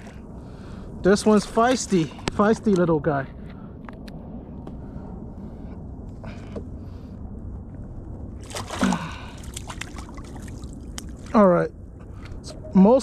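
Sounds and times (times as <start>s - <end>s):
splashy clatter: 8.4s - 11.3s.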